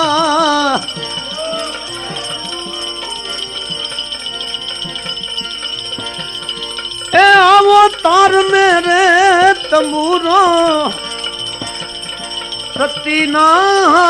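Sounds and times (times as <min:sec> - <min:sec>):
person singing: 0:00.0 - 0:04.5, 0:07.1 - 0:11.1, 0:12.8 - 0:14.0
hand drum beats: 0:00.0 - 0:14.0
steady jingling: 0:00.0 - 0:14.0.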